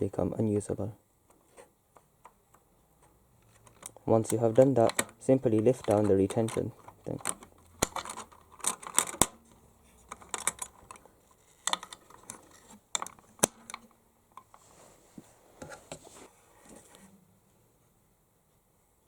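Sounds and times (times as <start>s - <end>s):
soft handling noise: 0.4s - 19.0s
plastic and metal clicks: 3.5s - 9.4s, 10.1s - 14.5s.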